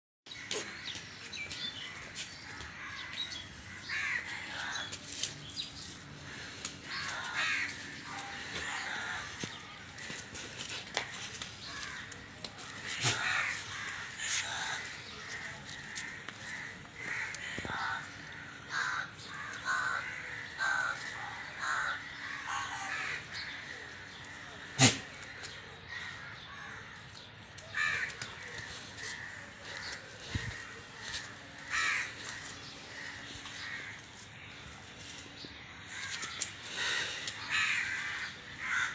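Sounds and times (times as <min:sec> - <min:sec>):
short animal calls: 0:24.8 - 0:25.1.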